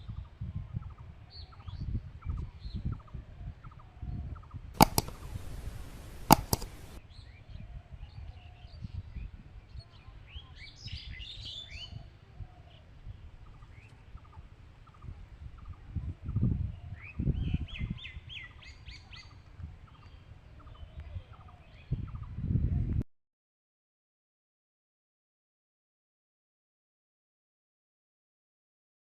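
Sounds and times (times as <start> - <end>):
birds chirping: 4.8 - 7.0
sharp clicks: 4.8 - 7.0.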